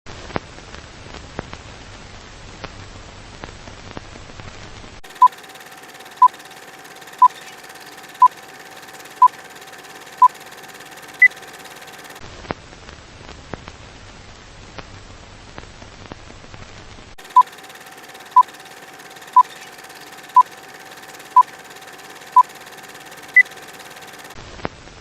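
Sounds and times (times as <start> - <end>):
film crackle and hiss: 0.1 - 25.0
faint steady hum: 17.2 - 24.4.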